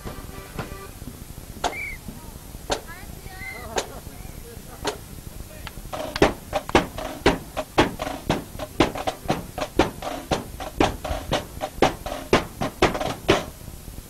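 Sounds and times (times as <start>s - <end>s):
steady held tone: 0.0s - 9.6s
marching drums beating: 0.0s - 14.0s.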